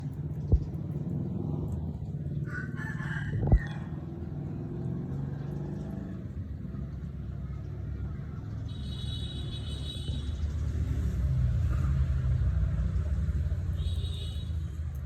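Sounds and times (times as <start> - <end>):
steady low rumble: 0.0 - 2.5
rooster crowing: 2.4 - 4.0.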